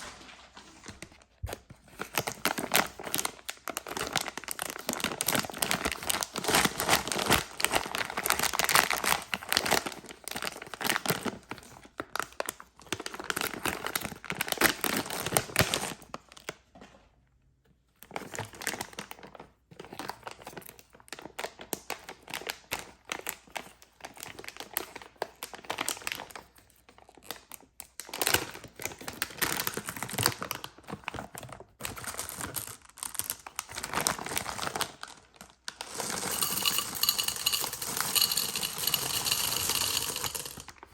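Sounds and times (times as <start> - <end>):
wrappers crinkling and tearing: 1.9 - 11.5, 19.9 - 40.9.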